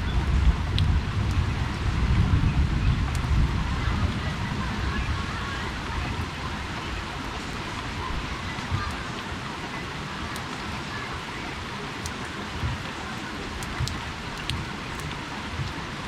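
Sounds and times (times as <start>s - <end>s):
steady rainfall: 0.0s - 16.0s
drips on hard surface: 5.0s - 16.0s
soft low thumps: 8.0s - 9.1s.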